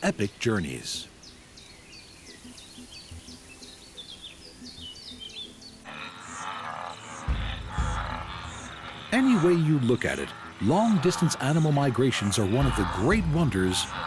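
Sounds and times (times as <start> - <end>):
steady hiss: 0.0 - 5.8
small birds chirping: 0.0 - 14.0
low rumble: 7.2 - 9.2.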